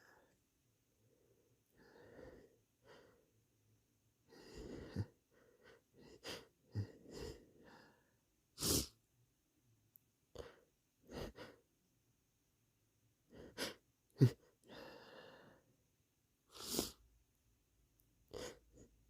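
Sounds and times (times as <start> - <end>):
person sniffing: 8.6 - 9.0, 16.5 - 17.0
person stifled sneezing: 8.6 - 9.0.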